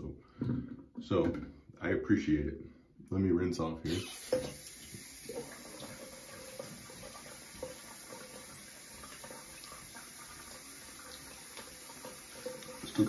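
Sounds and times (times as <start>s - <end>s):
sink tap running: 3.9s - 13.0s.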